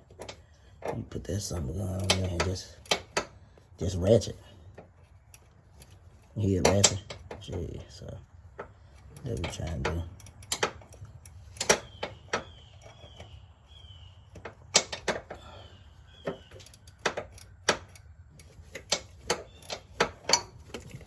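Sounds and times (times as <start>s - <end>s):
ratchet wrench clicking: 8.9s - 13.0s, 16.2s - 21.0s.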